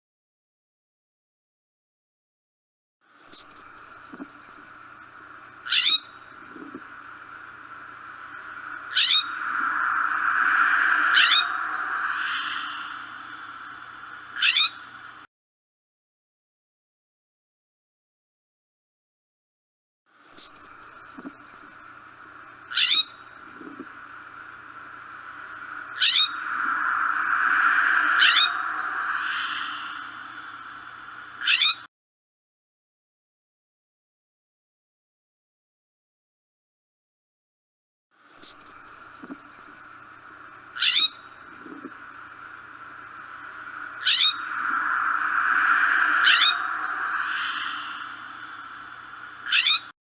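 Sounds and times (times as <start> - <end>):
steady background noise: 6.2 - 15.2, 23.2 - 31.4, 39.1 - 49.5
steady rushing noise: 6.4 - 14.4, 23.4 - 31.4, 41.5 - 49.5.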